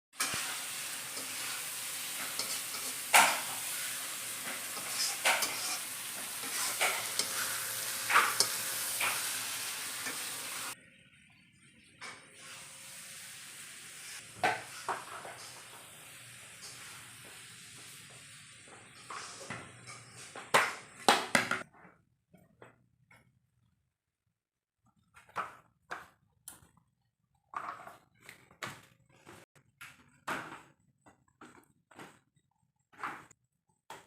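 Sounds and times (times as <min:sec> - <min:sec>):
food sizzling in hot pan: 0:00.2 - 0:10.8, 0:12.3 - 0:19.9
spatula scraping pan: 0:00.2 - 0:10.8, 0:19.0 - 0:20.4.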